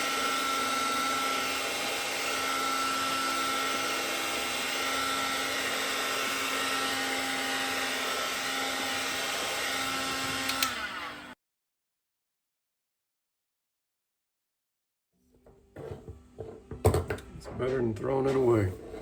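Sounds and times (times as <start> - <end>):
heat gun blowing: 0.0 - 11.4.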